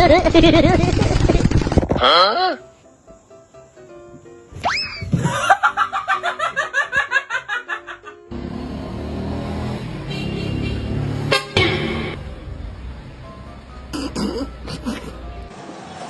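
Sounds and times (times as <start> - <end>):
rapid pitched laughing: 0.0 - 1.8
music: 1.9 - 8.4, 11.4 - 16.0.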